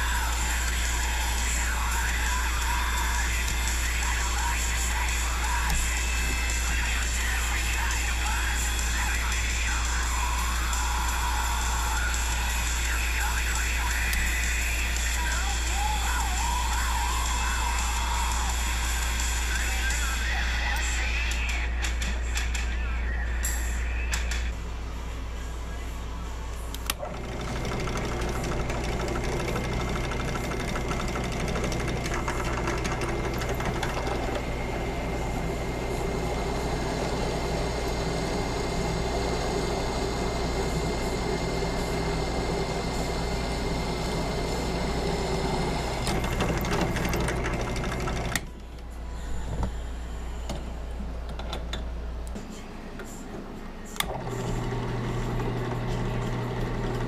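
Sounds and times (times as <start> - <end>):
drill press motor humming: 0.0 - 18.5, 26.8 - 48.6, 53.9 - 57.0
click: 26.5 - 27.0
drill bit drilling steel: 27.2 - 48.4.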